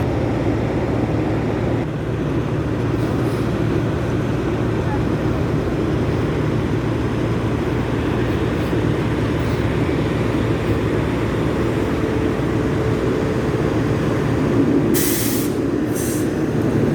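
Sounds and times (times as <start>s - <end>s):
large truck engine rumbling: 0.0s - 16.9s.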